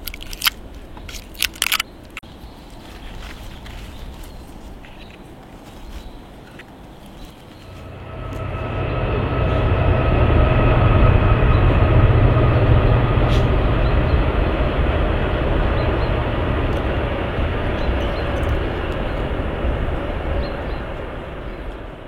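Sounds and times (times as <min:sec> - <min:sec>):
low mechanical rumble: 0:07.4 - 0:22.0
faint even whine: 0:07.5 - 0:22.0.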